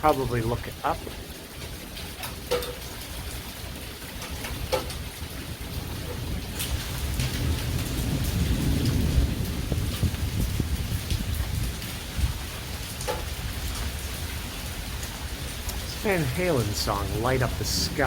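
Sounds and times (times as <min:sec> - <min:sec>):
heavy rain: 0:00.0 - 0:18.0
raindrop landing close by: 0:00.0 - 0:18.0
low roll of thunder: 0:03.7 - 0:14.5.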